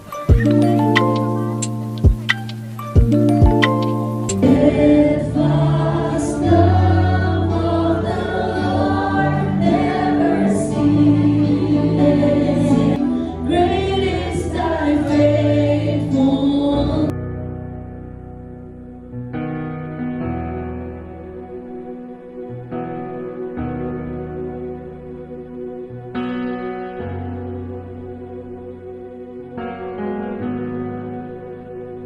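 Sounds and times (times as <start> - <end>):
choir singing over held chords: 0.0 - 17.1.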